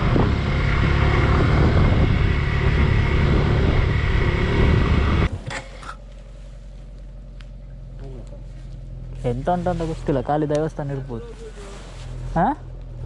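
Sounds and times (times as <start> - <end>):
wind rush: 0.0 - 5.4
motorcycle engine: 0.0 - 13.0.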